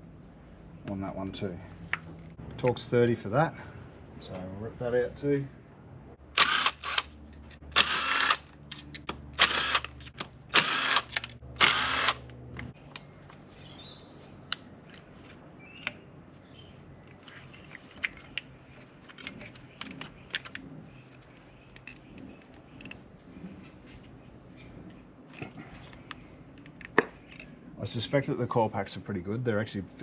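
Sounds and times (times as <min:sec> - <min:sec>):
power driver motor whine: 0:09.4 - 0:12.7
clicks and taps of parts handled: 0:25.9 - 0:27.5.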